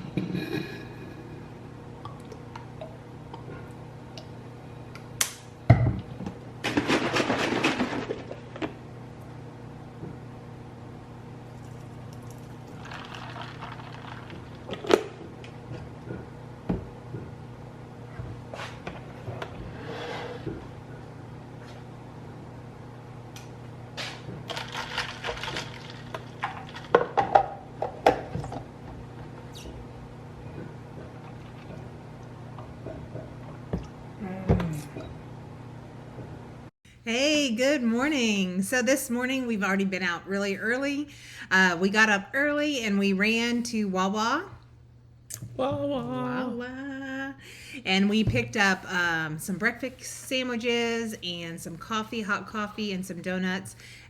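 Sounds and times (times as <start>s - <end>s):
steady low hum: 0.0s - 54.0s
water being poured: 11.6s - 14.7s.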